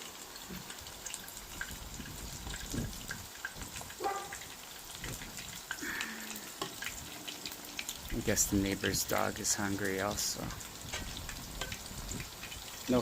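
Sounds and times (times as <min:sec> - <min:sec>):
food deep-frying in oil: 0:00.0 - 0:13.0.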